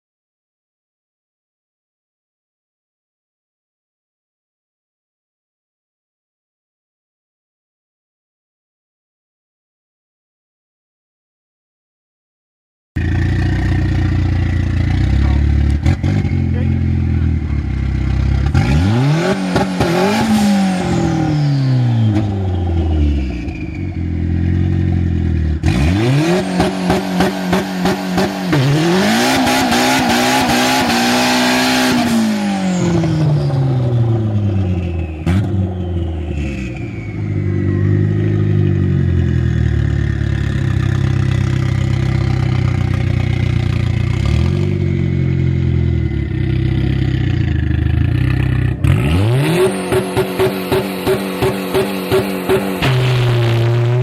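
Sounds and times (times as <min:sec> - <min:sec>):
engine idling: 0:13.0 - 0:18.5, 0:37.3 - 0:44.5
car engine revving: 0:13.0 - 0:54.0
faint turbo whine: 0:32.1 - 0:48.8.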